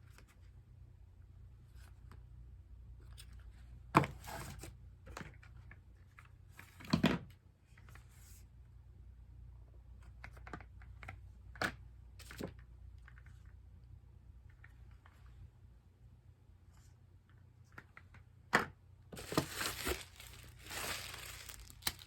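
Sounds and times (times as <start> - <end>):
rustling: 19.2 - 22.0.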